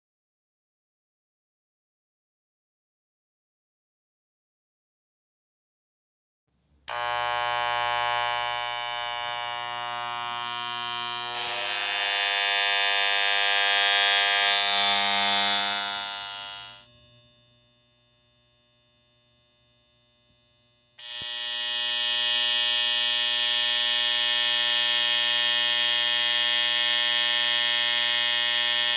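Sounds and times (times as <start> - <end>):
electric hair clipper buzzing: 6.9 - 28.9.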